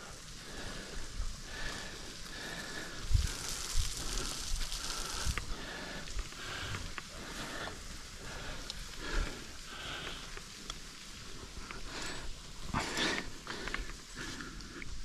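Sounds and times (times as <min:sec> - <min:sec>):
person breathing hard: 0:00.0 - 0:15.0.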